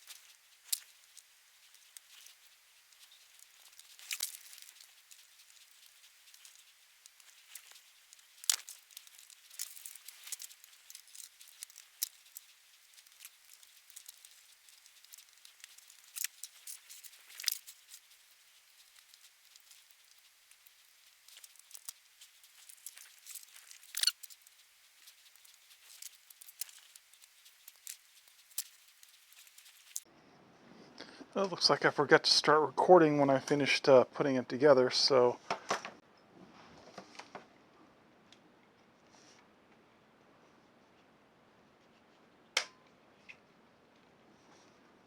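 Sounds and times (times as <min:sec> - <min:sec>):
small plastic parts clicking: 0:00.1 - 0:18.1, 0:22.6 - 0:24.5.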